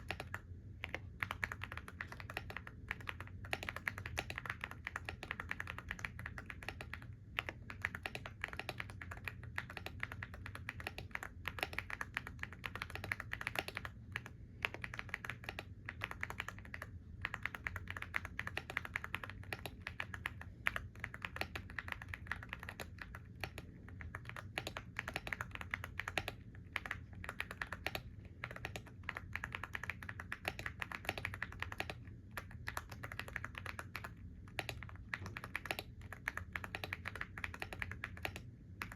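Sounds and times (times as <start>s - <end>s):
typing on a computer keyboard: 0.0s - 38.9s.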